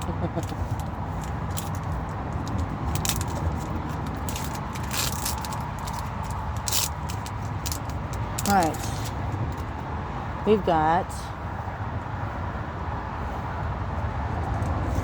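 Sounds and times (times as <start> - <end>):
foil wrapper and cards rustling: 0.0 - 9.6.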